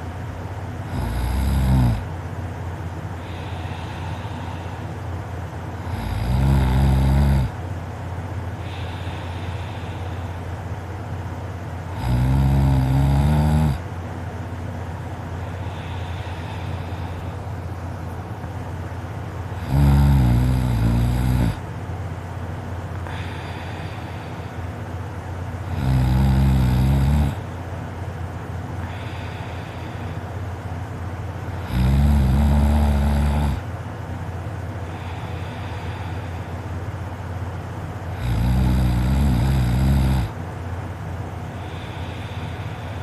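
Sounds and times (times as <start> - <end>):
man snoring: 0.8 - 2.1, 3.2 - 4.9, 5.8 - 7.6, 11.9 - 13.8, 19.5 - 21.6, 25.6 - 27.5, 31.5 - 33.7, 38.1 - 40.4
soft breaths out: 28.7 - 31.1, 33.6 - 38.1, 41.0 - 43.0.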